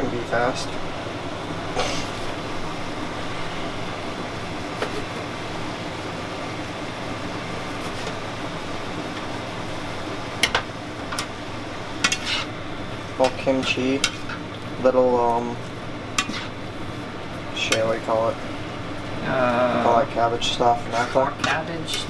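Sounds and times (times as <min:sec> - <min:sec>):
meat sizzling in a pan: 0:01.0 - 0:14.6.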